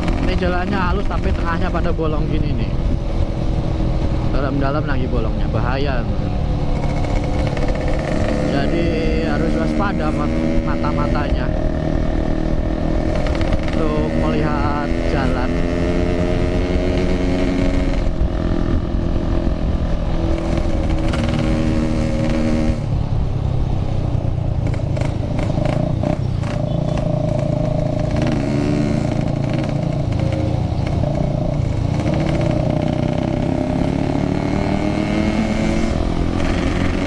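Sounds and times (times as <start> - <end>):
two-stroke motorcycle engine: 0.0 - 37.0
wind and road noise: 0.0 - 37.0.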